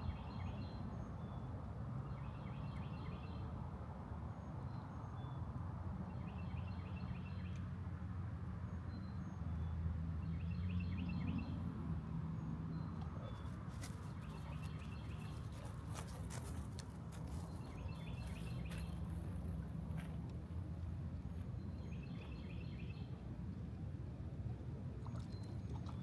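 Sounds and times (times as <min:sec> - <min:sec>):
songbird chirping: 0:12.7 - 0:19.6.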